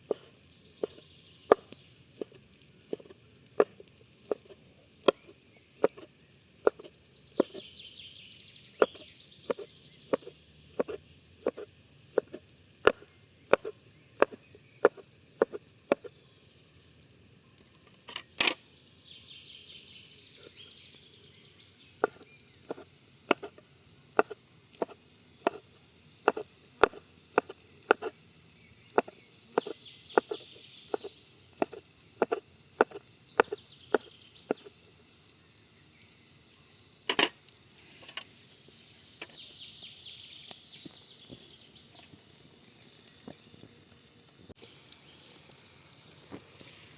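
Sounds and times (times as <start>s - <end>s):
faint high hiss: 0.0s - 46.9s
knife chopping on cutting board: 6.7s - 7.6s, 8.8s - 11.6s, 12.2s - 16.0s, 22.0s - 23.5s, 24.2s - 25.6s, 26.3s - 28.1s, 29.0s - 30.4s, 31.6s - 34.6s.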